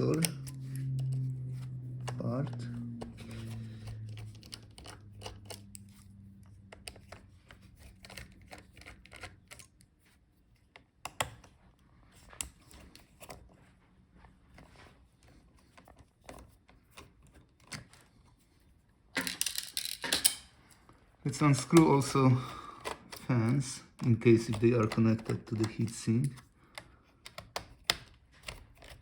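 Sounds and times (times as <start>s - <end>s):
low hum: 0.0s - 7.2s.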